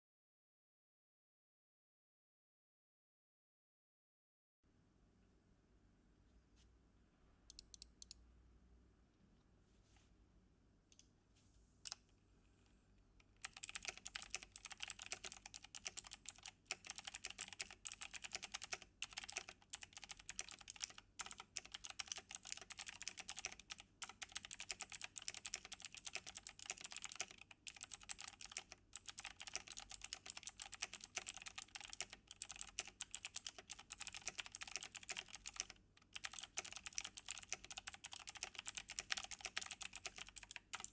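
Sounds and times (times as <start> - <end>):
clicky mechanical keyboard typing: 13.2 - 40.9.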